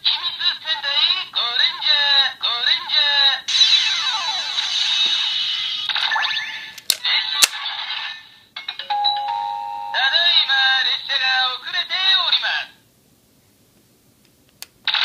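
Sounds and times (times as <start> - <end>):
toy speaker jingle: 8.8 - 10.6.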